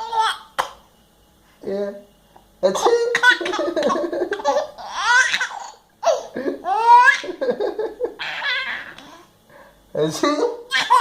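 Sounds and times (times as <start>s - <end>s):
baby belly-laughing: 3.1s - 7.4s, 8.1s - 9.2s, 10.7s - 11.0s
baby squealing: 4.5s - 7.2s, 8.2s - 9.2s, 10.7s - 11.0s.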